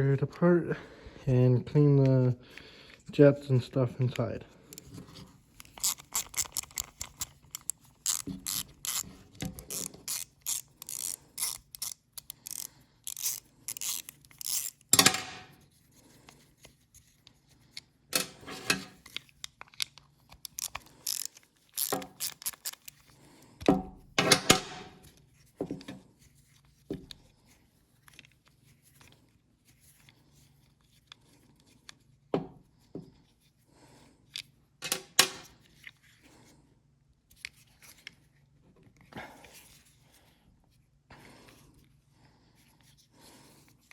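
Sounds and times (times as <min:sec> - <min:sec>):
tools and metal parts clicking: 0:05.6 - 0:15.5, 0:18.1 - 0:23.1.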